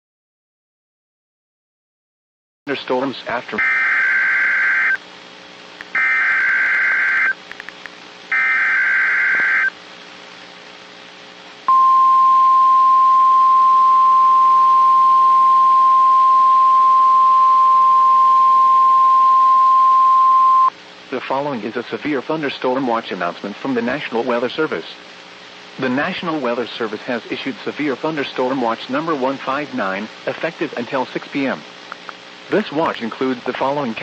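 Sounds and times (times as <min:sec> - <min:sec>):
screeching digital data bursts: 0:03.6 - 0:05.0, 0:05.9 - 0:07.4, 0:08.3 - 0:09.7
steady alarm tone: 0:03.6 - 0:05.0, 0:05.9 - 0:07.4, 0:08.3 - 0:09.7.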